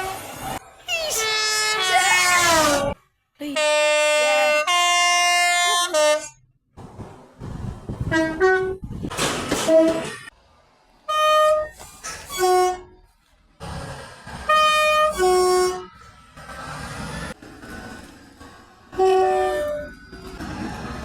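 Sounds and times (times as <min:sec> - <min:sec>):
rumble of passing trains: 0:00.0 - 0:21.0
two-tone train horn blasts: 0:03.6 - 0:06.3, 0:12.3 - 0:12.9, 0:14.5 - 0:15.9, 0:19.0 - 0:19.9.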